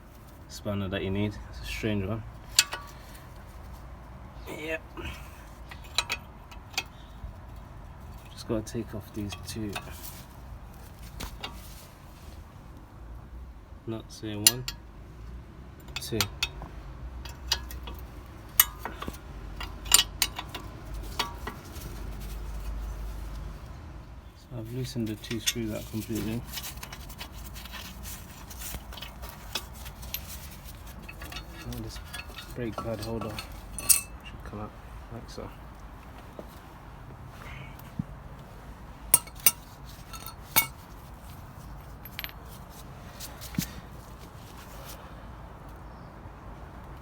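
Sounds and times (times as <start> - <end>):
spanner clinking on bolts: 2.4 - 3.3, 5.6 - 10.2, 15.8 - 22.9, 25.0 - 34.5, 39.1 - 42.8.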